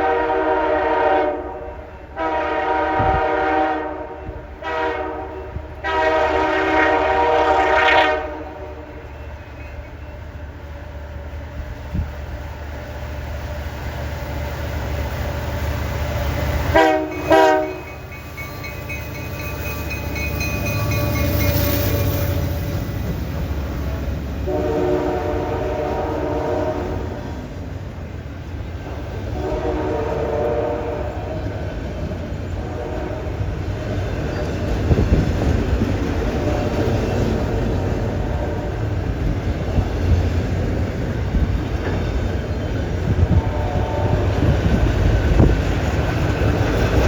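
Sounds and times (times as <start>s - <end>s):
train horn: 0.0s - 9.3s, 16.6s - 22.6s, 24.4s - 27.6s, 28.8s - 33.7s, 36.2s - 39.3s, 43.1s - 45.5s
diesel locomotives rumbling: 0.0s - 47.0s
train bell ringing: 9.0s - 10.3s, 17.0s - 24.1s.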